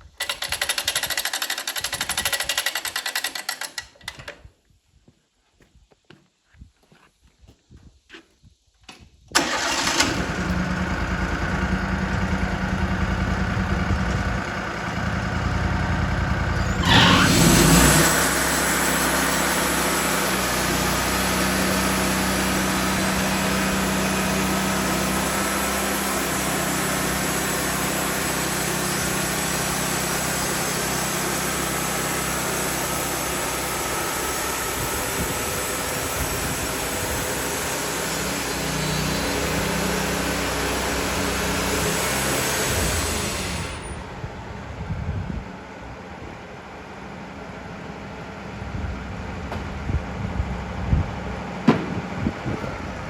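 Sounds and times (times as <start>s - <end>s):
sawmill engine running: 0.0s - 4.2s, 9.4s - 53.0s
high-pitched mechanical noise: 16.0s - 44.1s.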